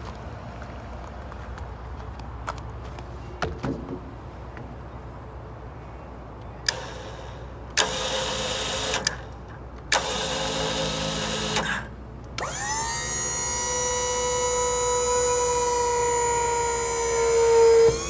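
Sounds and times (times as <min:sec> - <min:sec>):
hydraulic pump motor whine: 0:06.7 - 0:18.0.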